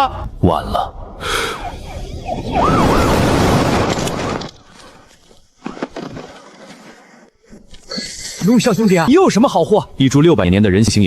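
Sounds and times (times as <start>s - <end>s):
police siren wailing: 2.2s - 3.9s.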